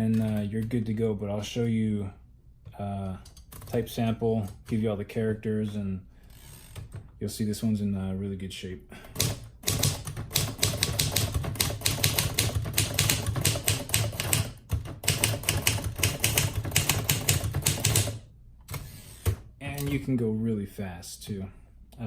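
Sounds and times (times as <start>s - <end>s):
typewriter key strikes: 9.2s - 18.2s.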